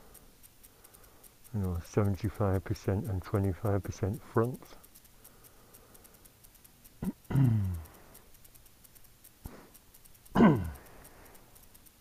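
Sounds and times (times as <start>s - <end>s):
sharp clicks: 0.0s - 12.0s
man grunting: 7.0s - 7.8s, 10.4s - 10.8s.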